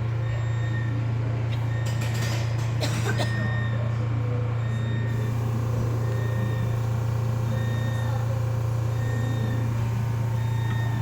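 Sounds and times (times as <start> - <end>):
low machine hum: 2.9 - 11.0.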